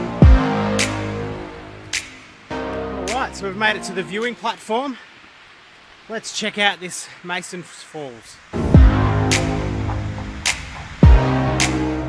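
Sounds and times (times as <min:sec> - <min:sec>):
electronic music with crisp hits: 0:00.0 - 0:04.4, 0:08.6 - 0:12.0
deep falling sweep: 0:08.5 - 0:12.0.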